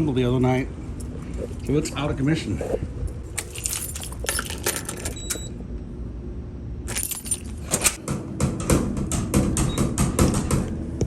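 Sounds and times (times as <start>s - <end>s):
steady low rumble: 0.0s - 9.0s
metal keys jangling: 3.1s - 5.4s, 6.9s - 8.0s.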